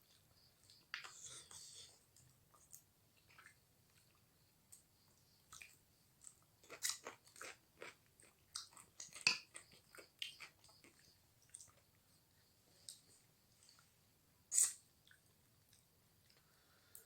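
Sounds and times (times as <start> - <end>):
person chewing food: 0.1 - 4.8, 5.5 - 13.9.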